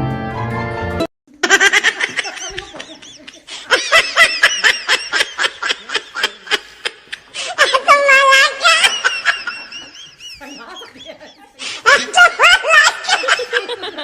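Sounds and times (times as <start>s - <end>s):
orchestral music: 0.0s - 1.1s
person laughing hard: 1.4s - 14.0s.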